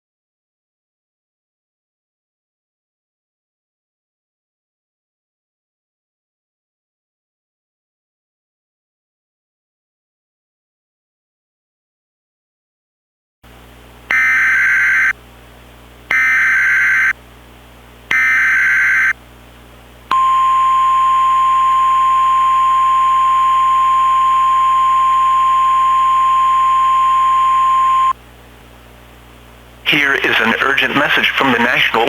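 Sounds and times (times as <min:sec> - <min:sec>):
screechy digital data tones: 0:14.1 - 0:15.1, 0:16.1 - 0:17.1, 0:18.1 - 0:19.1
steady single-pitch warning tone: 0:14.1 - 0:15.2, 0:16.1 - 0:17.2, 0:18.1 - 0:19.2, 0:20.1 - 0:28.2.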